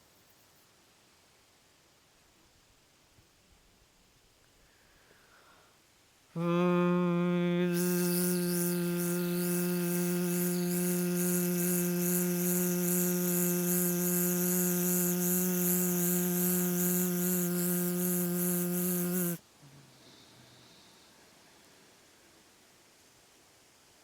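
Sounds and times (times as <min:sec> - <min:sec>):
pulsing hiss: 0:06.4 - 0:19.4.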